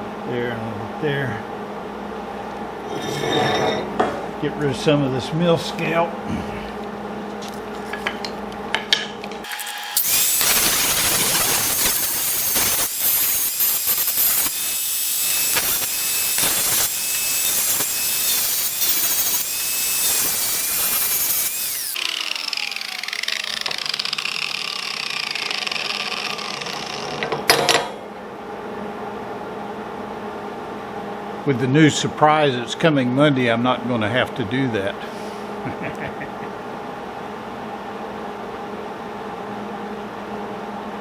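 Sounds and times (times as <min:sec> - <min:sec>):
power grinder grinding steel: 0:09.4 - 0:27.2.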